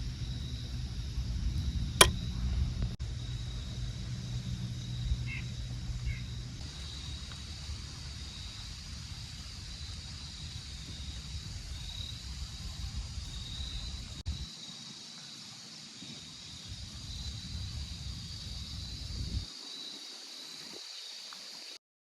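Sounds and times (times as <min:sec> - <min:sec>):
high-pitched outdoor hum: 0:00.0 - 0:14.5
wind rumbling on microphone: 0:00.0 - 0:14.5, 0:16.0 - 0:19.7.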